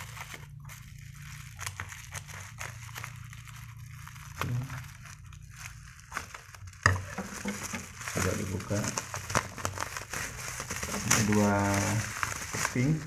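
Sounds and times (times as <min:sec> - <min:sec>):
packaging crinkling and clicking: 0:00.0 - 0:13.0
steady low hum: 0:00.0 - 0:13.0.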